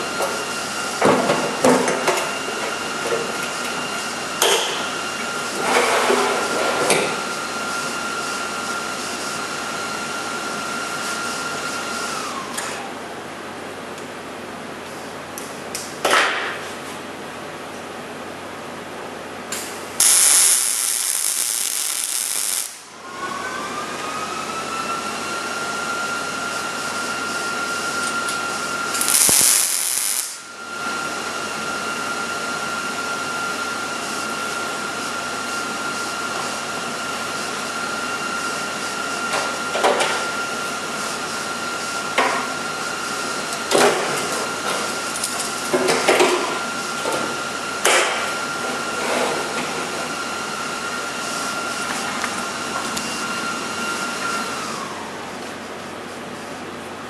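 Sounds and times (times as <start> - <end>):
welding sizzle: 19.6 - 23.0, 28.0 - 30.6
steady high whine: 19.6 - 23.2, 24.9 - 32.2.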